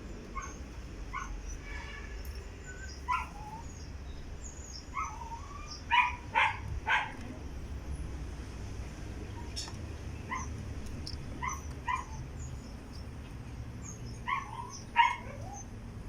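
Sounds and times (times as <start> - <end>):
dog yipping and whimpering: 0.4 - 1.5, 2.7 - 3.8, 4.9 - 7.2, 10.3 - 10.5, 11.4 - 12.3, 13.8 - 15.7.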